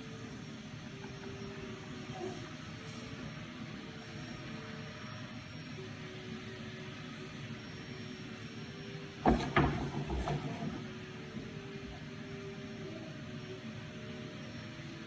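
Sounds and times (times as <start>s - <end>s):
steady background hum: 0.0s - 15.0s
light knocks and rattling: 9.2s - 12.0s.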